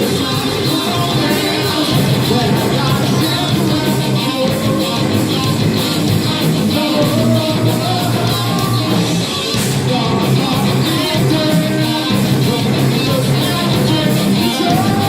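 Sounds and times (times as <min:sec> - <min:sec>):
bass guitar: 0:00.0 - 0:15.0
distorted electric guitars: 0:00.0 - 0:15.0
drum beat: 0:00.0 - 0:15.0
person singing: 0:00.0 - 0:15.0.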